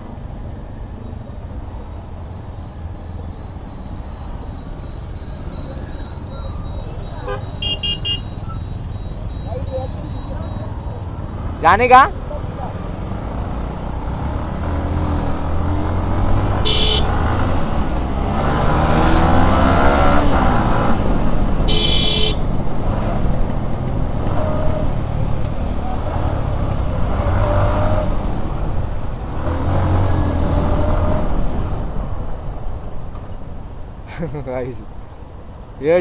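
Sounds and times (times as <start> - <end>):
wind: 0.0 - 36.0
motorcycle engine rumbling: 2.0 - 35.6
vehicle horn honking: 5.4 - 12.6, 16.1 - 17.8, 21.6 - 22.6.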